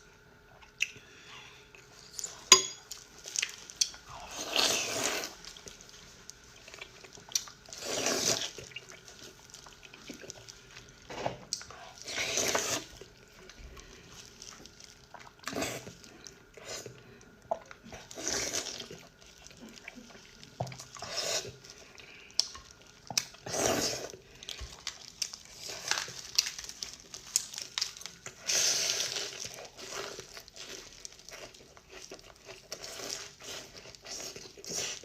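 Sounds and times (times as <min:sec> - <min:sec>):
person chewing and slurping noodles: 0:01.7 - 0:35.0.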